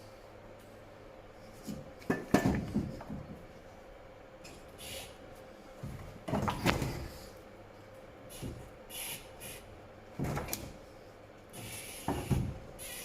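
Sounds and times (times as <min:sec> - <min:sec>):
tools and parts clunking: 0:01.7 - 0:03.4.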